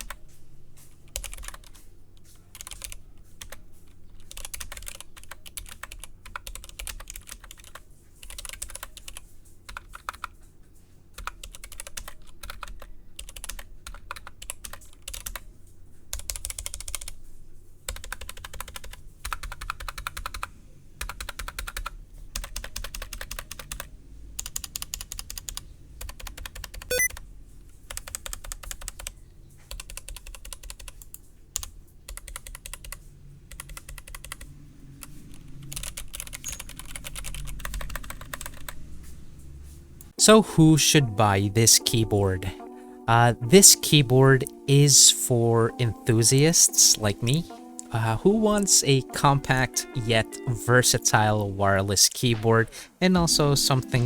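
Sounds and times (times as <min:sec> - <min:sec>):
mechanical keyboard typing: 0:00.0 - 0:00.2, 0:01.1 - 0:10.4, 0:11.2 - 0:15.5, 0:16.1 - 0:17.2, 0:17.9 - 0:27.2, 0:27.9 - 0:38.8.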